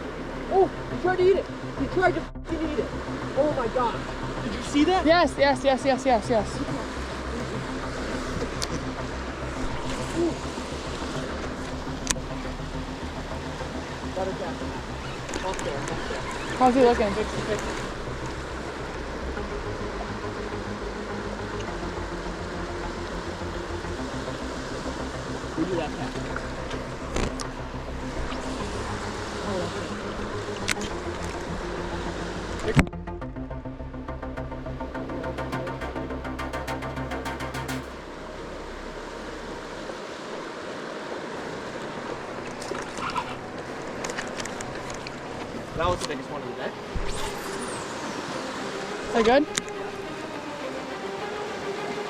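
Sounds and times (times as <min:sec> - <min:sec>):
fast-flowing river water: 0:00.0 - 0:33.0, 0:34.2 - 0:52.0
faint clicks: 0:08.4 - 0:09.0, 0:41.4 - 0:46.2.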